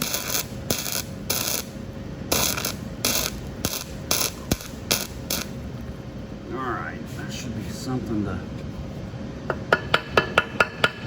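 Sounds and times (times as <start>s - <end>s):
welder crackling bursts: 0.0s - 5.8s.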